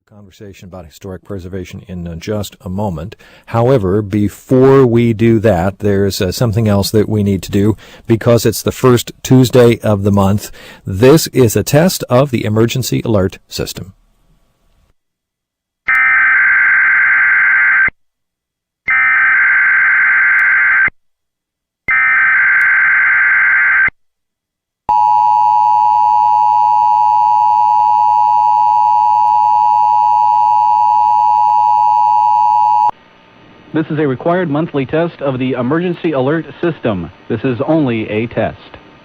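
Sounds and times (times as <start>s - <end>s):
two-tone attention signal: 24.9s - 32.9s.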